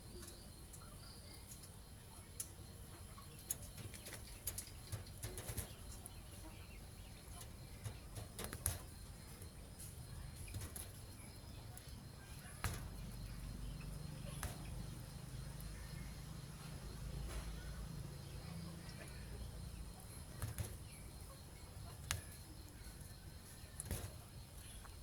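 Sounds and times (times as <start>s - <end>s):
faint low hum: 0.0s - 25.0s
bird wings flapping: 3.7s - 6.1s, 7.4s - 9.0s, 20.4s - 20.9s.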